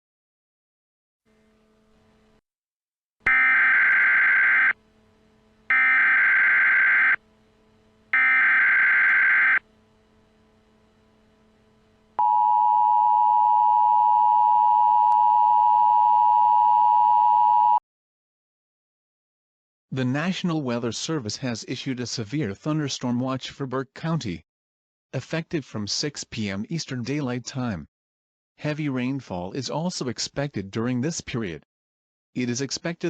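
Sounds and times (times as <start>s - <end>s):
two-tone attention signal: 3.3s - 4.7s, 8.2s - 9.6s
screeching digital data bursts: 5.7s - 7.2s, 8.2s - 9.6s.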